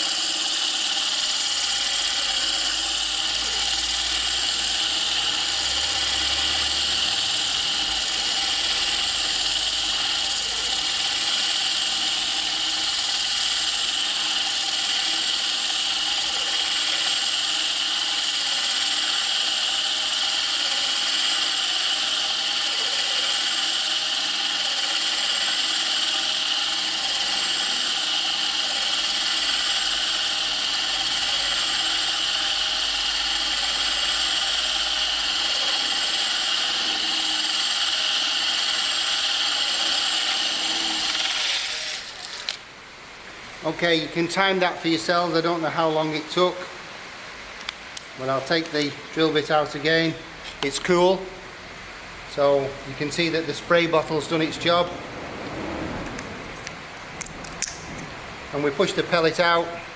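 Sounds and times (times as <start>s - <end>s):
drill bit grinding tile: 0.0s - 42.6s.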